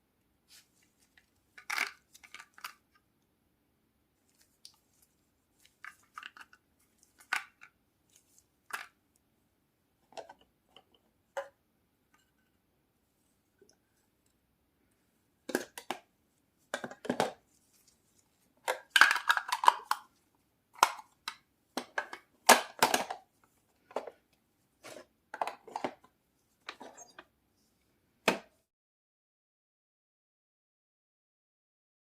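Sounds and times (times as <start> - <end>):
hard objects knocking and clattering: 16.7 - 17.4.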